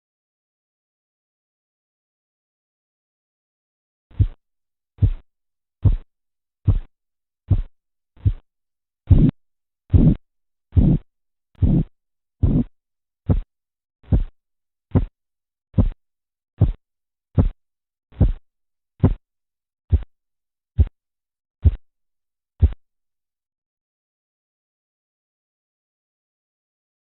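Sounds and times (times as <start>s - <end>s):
pulse thumps through stethoscope: 4.1s - 4.4s, 5.0s - 5.2s, 5.8s - 6.9s, 7.5s - 8.5s, 9.1s - 12.7s, 13.3s - 15.2s, 15.8s - 16.0s, 16.6s - 16.8s, 17.4s - 18.4s, 19.0s - 19.2s, 19.9s - 20.1s, 20.8s - 21.0s, 21.6s - 21.8s, 22.6s - 22.8s.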